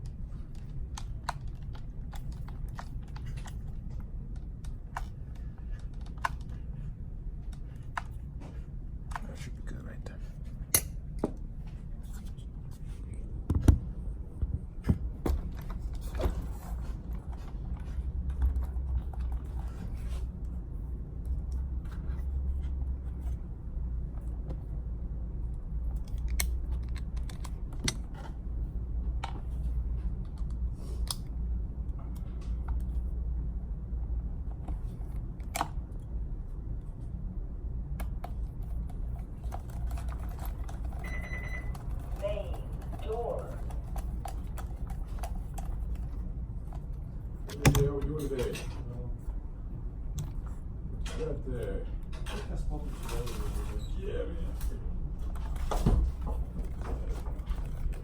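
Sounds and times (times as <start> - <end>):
steady low hum: 0.0 - 58.0
tools and metal parts clicking: 38.7 - 45.9.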